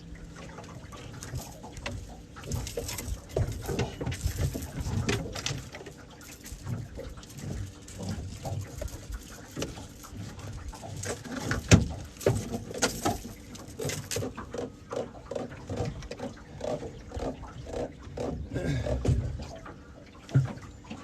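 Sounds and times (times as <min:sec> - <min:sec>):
rustling: 0:02.4 - 0:14.2.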